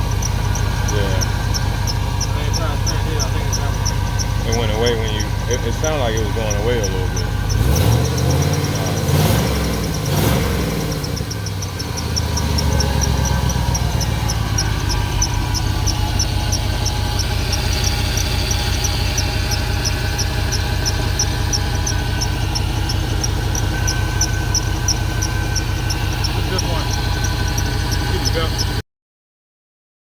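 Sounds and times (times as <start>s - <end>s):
high even ticking: 0.0s - 28.8s
vehicle engine idling and revving: 0.0s - 28.8s.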